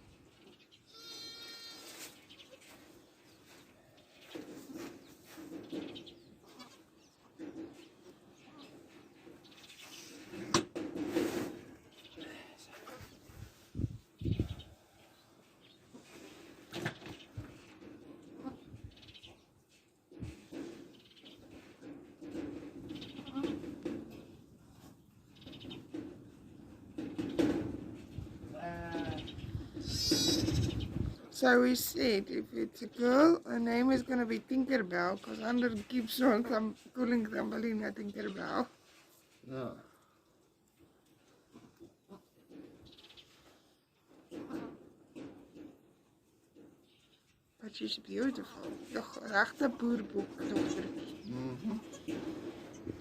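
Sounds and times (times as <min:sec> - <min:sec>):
goats bleating: 0:00.9 - 0:01.9.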